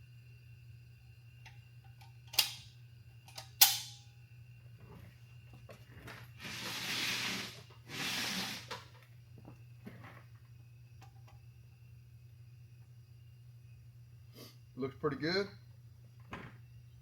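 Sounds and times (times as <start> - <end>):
steady low hum: 0.0 - 17.0
compressed air blasts: 6.4 - 8.9.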